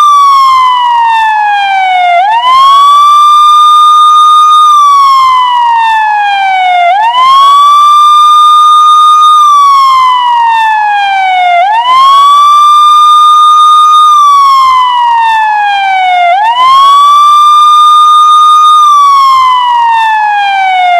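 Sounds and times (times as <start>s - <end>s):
police siren wailing: 0.0s - 20.9s.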